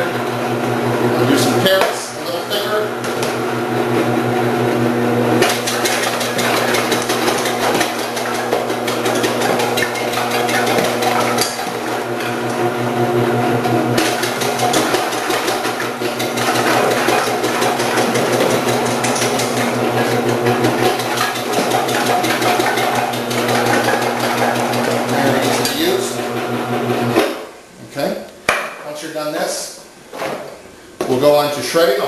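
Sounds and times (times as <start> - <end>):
food processor motor hum: 2.3 - 27.2.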